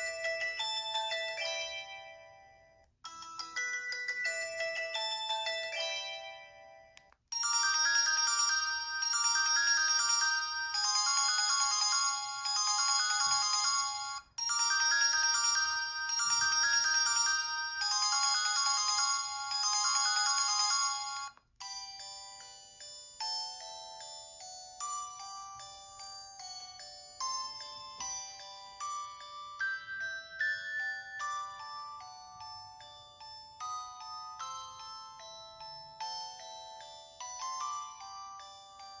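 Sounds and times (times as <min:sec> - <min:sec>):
synthesized ringtone melody: 0:00.0 - 0:39.0.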